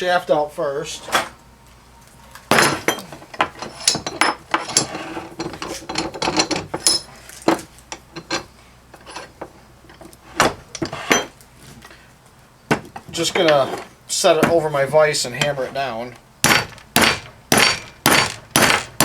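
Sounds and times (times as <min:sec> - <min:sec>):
metal parts clanking and scraping: 0:02.5 - 0:12.0, 0:12.9 - 0:14.6.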